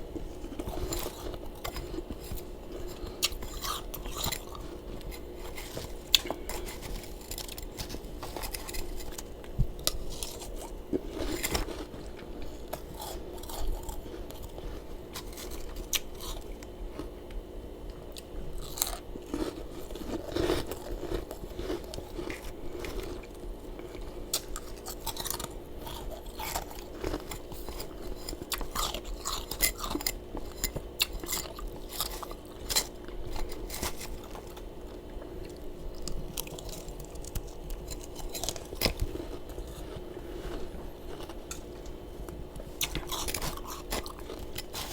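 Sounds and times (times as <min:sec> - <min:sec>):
crunching and chewing frost: 0:00.0 - 0:44.9
steady low hum: 0:00.0 - 0:44.9.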